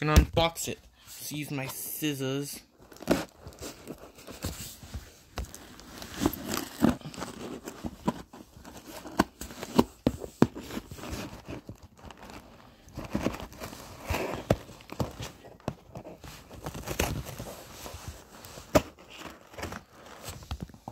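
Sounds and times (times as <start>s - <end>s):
cardboard crinkling and tearing: 2.7s - 20.9s.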